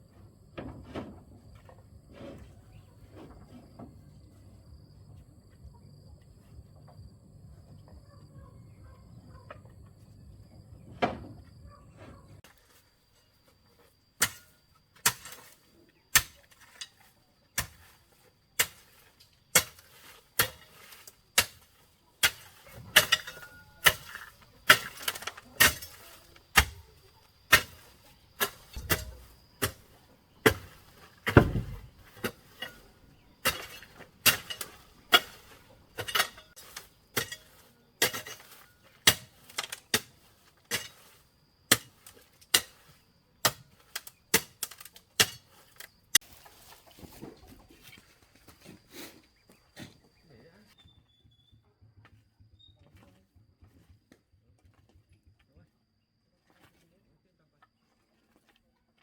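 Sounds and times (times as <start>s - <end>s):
hand tool striking wood: 14.2s - 46.4s.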